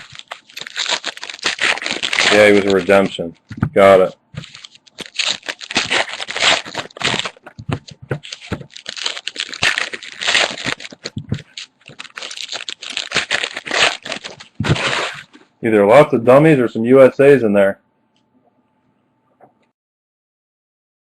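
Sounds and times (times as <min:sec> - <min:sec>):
wrappers crinkling and tearing: 0:00.0 - 0:15.4.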